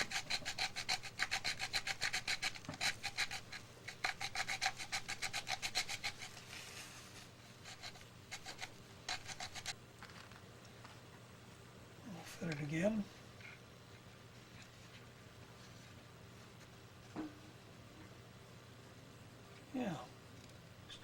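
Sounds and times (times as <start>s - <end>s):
file rasping on plastic: 0.0s - 6.4s, 7.5s - 9.8s.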